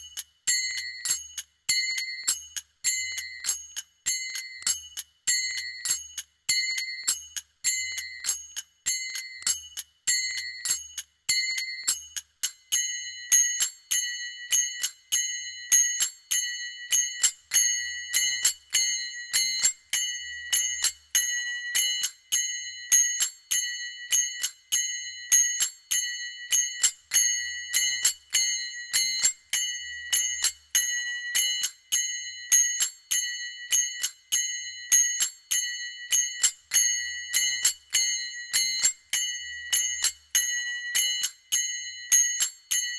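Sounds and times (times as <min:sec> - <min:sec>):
small hand cymbals clashing: 0:00.0 - 0:42.9.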